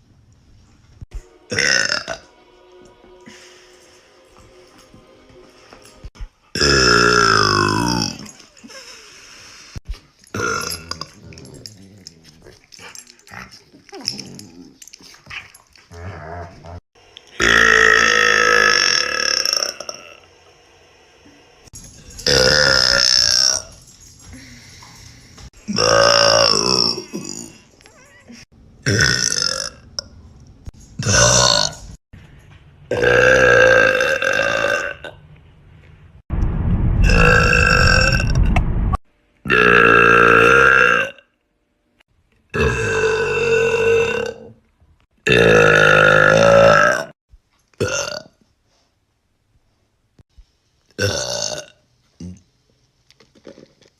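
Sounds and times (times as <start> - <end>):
woman burping: 25.7 - 29.7.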